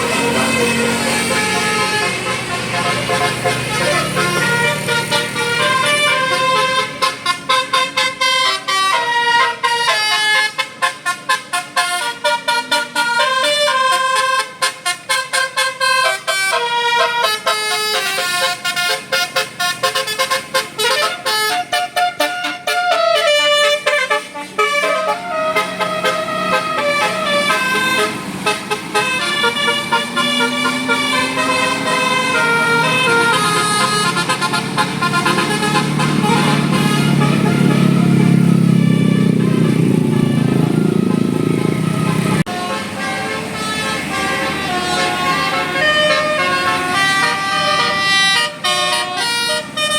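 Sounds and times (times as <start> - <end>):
musical air horn melody: 0.0 - 49.9.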